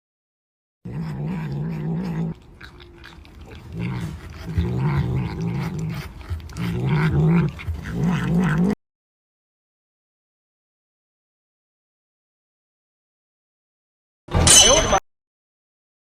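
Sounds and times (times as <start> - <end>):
cat growling: 0.9 - 8.8.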